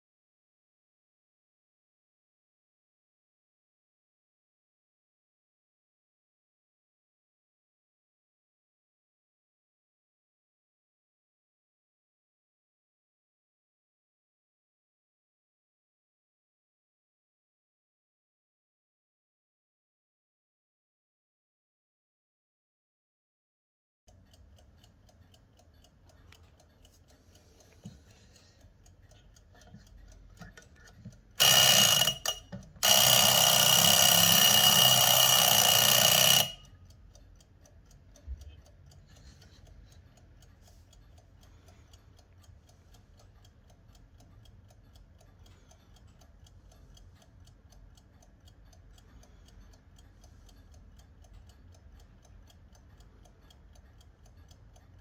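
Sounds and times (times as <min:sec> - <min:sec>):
alarm clock ticking: 0:24.1 - 0:55.0
alarm bell ringing: 0:31.4 - 0:36.7.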